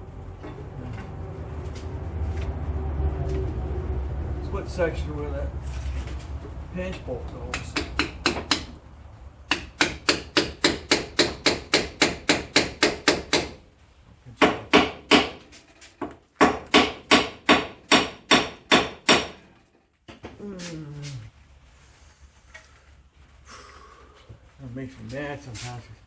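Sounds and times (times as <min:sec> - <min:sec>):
hammer striking metal tool: 0:07.5 - 0:08.8, 0:09.5 - 0:13.6.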